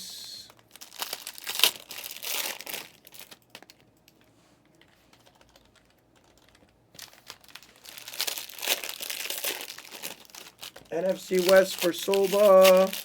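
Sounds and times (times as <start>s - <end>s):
computer keyboard typing: 4.7s - 6.8s.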